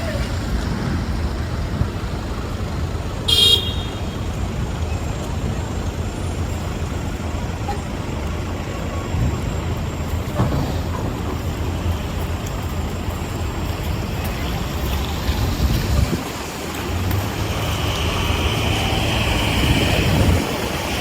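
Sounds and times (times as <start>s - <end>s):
city street traffic rumble: 0.0s - 21.0s
short car horn toot: 3.3s - 4.0s.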